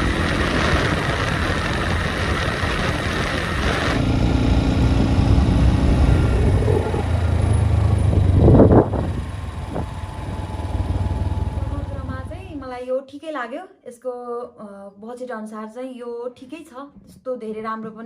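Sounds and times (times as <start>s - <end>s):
motorcycle engine rumble: 0.0s - 12.7s.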